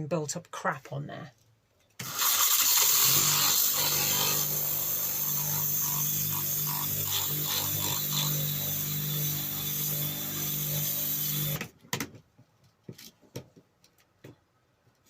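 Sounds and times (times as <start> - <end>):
power tool motor humming: 2.0 - 11.6.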